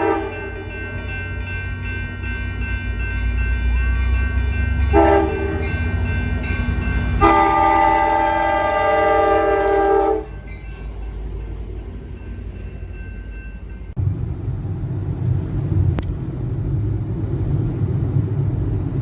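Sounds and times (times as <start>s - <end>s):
horn sounding a chord: 4.9s - 5.7s, 7.2s - 10.4s
low rumble: 13.9s - 19.0s.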